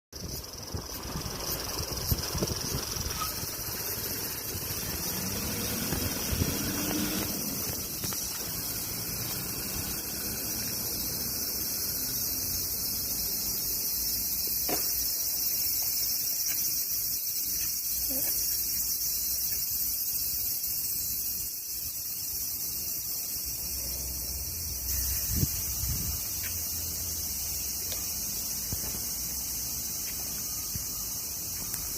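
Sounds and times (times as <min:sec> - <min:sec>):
wind rumble on microphone: 0:00.2 - 0:03.9, 0:05.9 - 0:08.2, 0:25.2 - 0:26.3
insects chirring: 0:00.2 - 0:31.9.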